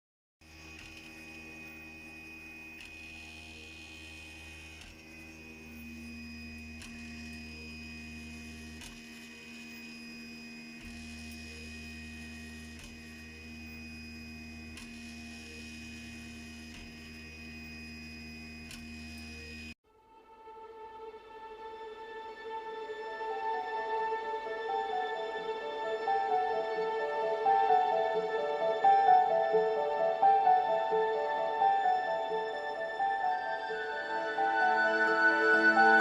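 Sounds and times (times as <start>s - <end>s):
printer motors humming and whining: 0.5s - 19.7s.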